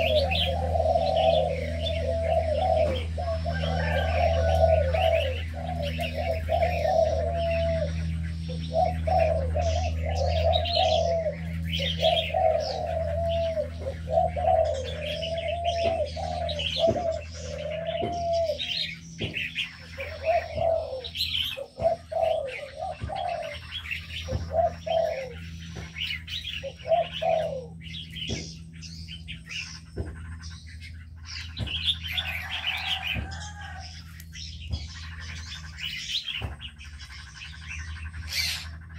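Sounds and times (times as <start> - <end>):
doves cooing: 0.0 - 38.9
small birds chirping: 0.0 - 38.9
steady low hum: 0.0 - 38.9.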